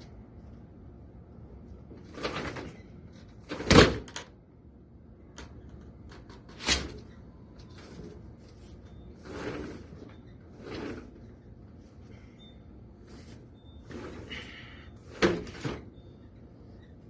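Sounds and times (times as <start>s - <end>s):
rustling and scraping: 7.6s - 12.1s.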